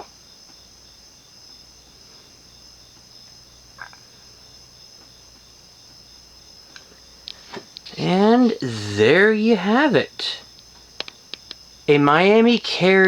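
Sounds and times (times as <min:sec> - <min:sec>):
small tick: 0:10.6 - 0:11.6.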